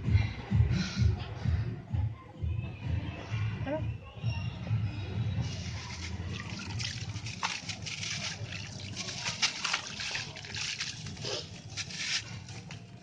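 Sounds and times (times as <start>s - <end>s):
concrete crumbling and crunching: 5.6s - 13.0s.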